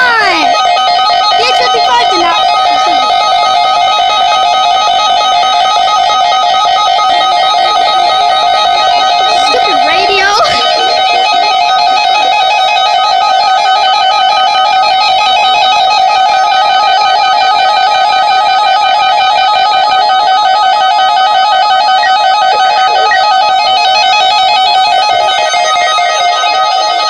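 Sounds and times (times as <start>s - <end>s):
warbling alert tone: 0.0s - 13.2s, 22.1s - 27.0s.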